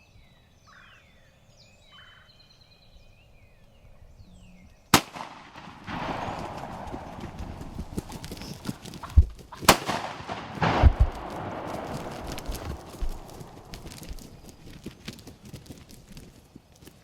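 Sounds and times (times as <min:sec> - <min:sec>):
shotgun shots: 0:05.0 - 0:14.6
steady rustling: 0:05.3 - 0:17.0.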